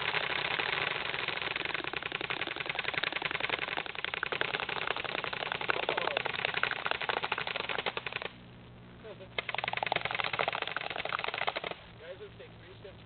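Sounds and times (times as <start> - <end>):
airsoft guns firing on full auto: 0.0 - 8.3, 9.4 - 11.8.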